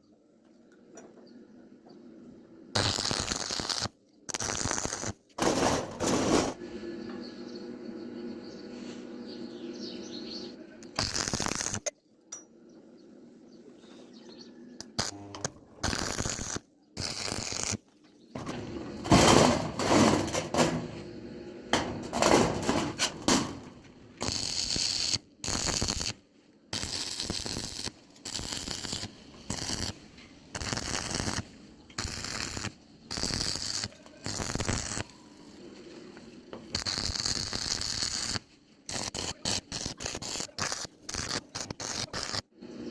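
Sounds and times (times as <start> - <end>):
metalworking noise bursts: 4.4 - 6.8, 18.4 - 26.2, 36.7 - 42.9.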